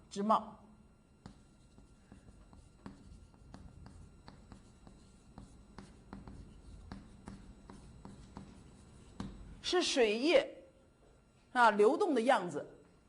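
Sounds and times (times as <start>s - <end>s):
writing on a board: 1.2s - 9.6s.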